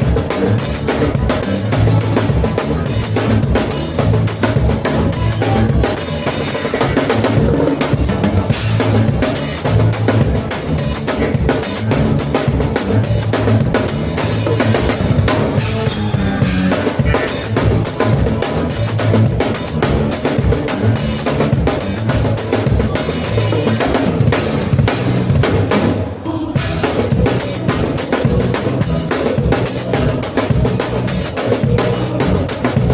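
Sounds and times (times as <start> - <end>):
drum kit steady beat: 0.0 - 32.9
accordion: 15.6 - 18.0.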